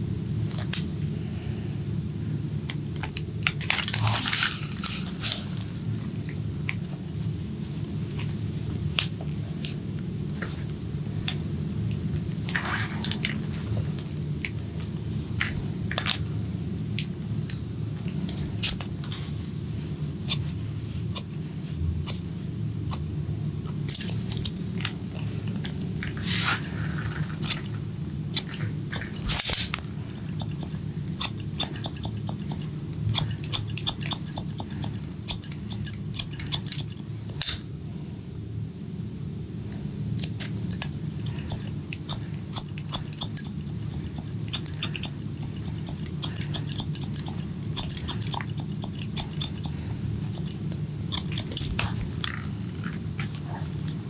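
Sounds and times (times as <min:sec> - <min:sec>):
steady low hum: 0:00.0 - 0:54.0
scissors snipping hair: 0:18.2 - 0:19.0, 0:20.3 - 0:21.4, 0:22.0 - 0:22.3, 0:22.9 - 0:23.1, 0:23.9 - 0:24.6, 0:26.2 - 0:26.8, 0:27.4 - 0:37.7, 0:40.3 - 0:52.0.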